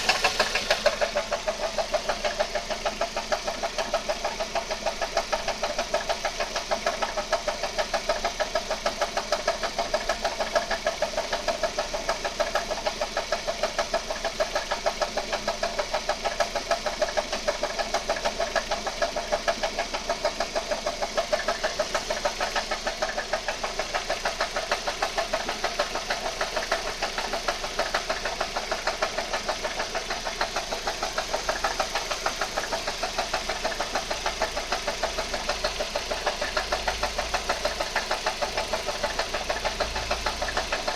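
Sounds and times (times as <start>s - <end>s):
petrol engine running: 0.0s - 4.4s, 19.2s - 40.9s
fast engine knocking: 0.0s - 40.9s.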